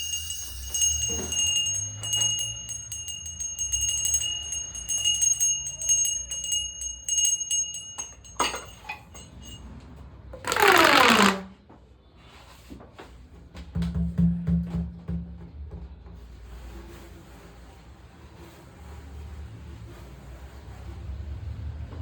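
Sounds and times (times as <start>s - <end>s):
jingling metal with high ring: 0.0s - 9.8s
pitched sound sliding downward: 10.5s - 11.5s.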